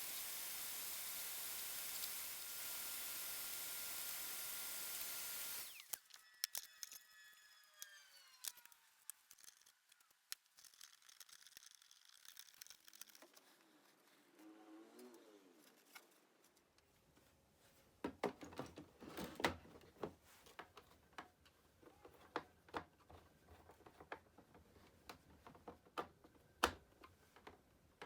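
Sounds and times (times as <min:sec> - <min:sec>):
falling whine of spinning down: 0:05.6 - 0:09.1
small clicks of parts handled: 0:05.8 - 0:07.0, 0:07.8 - 0:13.7.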